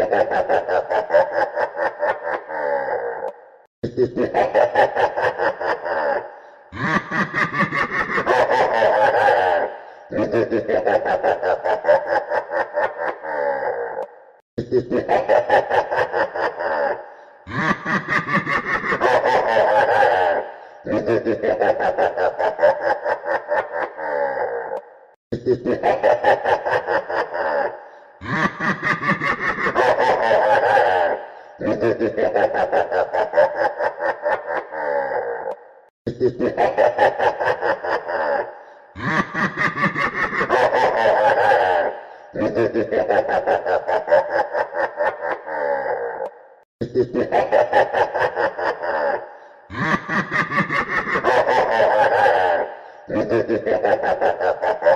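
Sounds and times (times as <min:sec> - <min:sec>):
evil laugh: 0:00.0 - 0:54.9
person cackling: 0:00.0 - 0:54.9.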